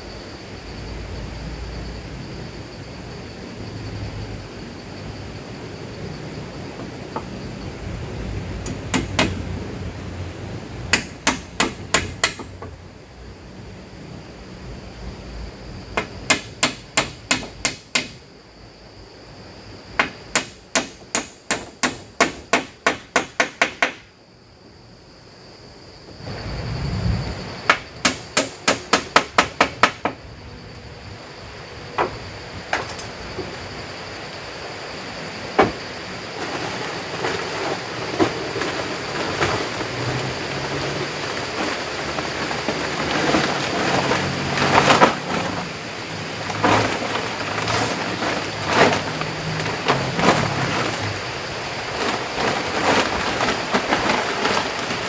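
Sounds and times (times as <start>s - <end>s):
hammering strikes: 8.6s - 9.4s, 10.9s - 12.5s, 16.0s - 18.2s.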